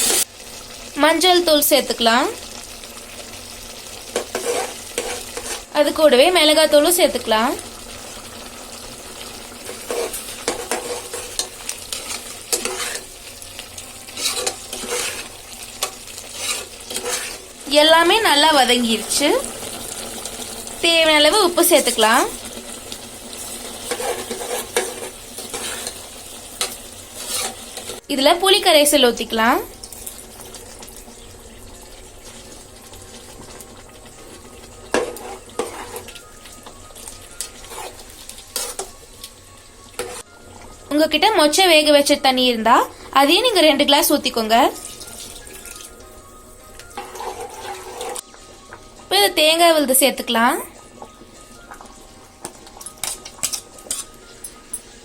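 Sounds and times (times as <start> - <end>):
sizzling in oil: 0.0 - 55.0
ladle scraping a pot: 4.1 - 5.7, 9.5 - 13.2, 14.1 - 17.6, 23.4 - 28.0, 34.4 - 36.2, 37.4 - 38.9, 40.0 - 40.3, 47.0 - 48.2, 52.7 - 54.2.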